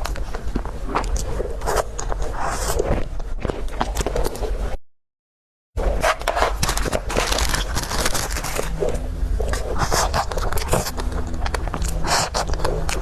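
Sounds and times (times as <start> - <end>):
food crunching and chewing: 0.0 - 4.8, 5.8 - 13.0
low hum: 5.8 - 13.0.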